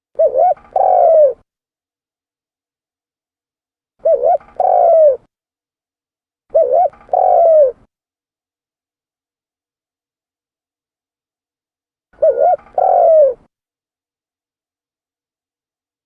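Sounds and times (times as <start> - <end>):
dove cooing: 0.2 - 1.4, 4.0 - 5.3, 6.5 - 7.9, 12.2 - 13.5.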